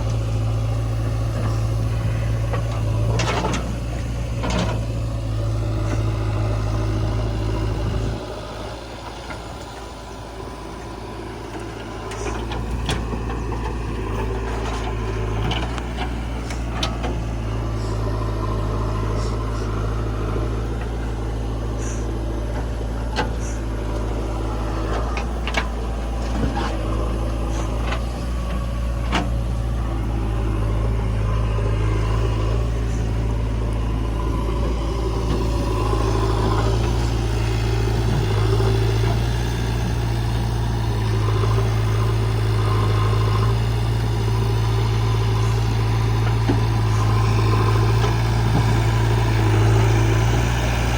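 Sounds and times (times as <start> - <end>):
heavy diesel machinery running: 0.0 - 50.9.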